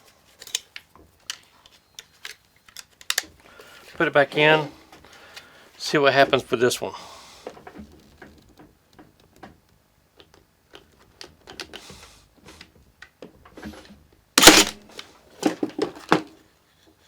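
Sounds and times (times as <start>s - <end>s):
stapler handling clicks: 2.0s - 3.3s
stapler firing: 14.4s - 14.8s.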